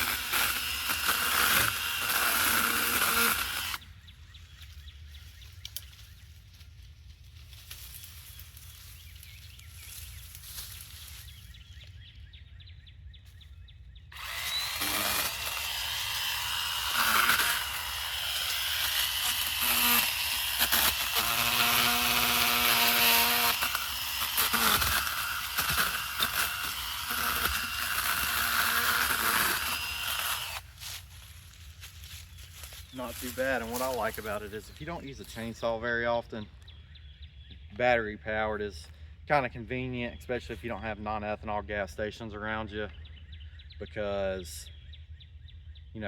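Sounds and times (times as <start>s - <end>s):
chainsaw cutting wood: 0.0s - 3.8s, 14.1s - 31.0s.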